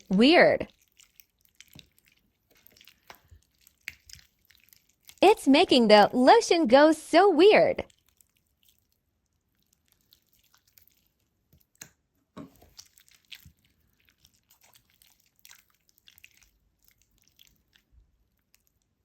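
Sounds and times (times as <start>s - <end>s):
slime squelching and clicking: 0.0s - 6.5s, 7.8s - 19.0s
slime popping: 0.6s - 5.2s.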